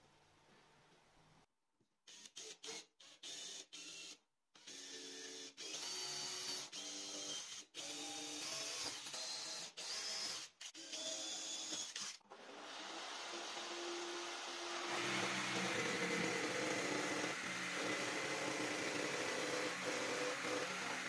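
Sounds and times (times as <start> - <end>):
small electric motor whirring: 2.1 - 12.2, 13.4 - 21.0.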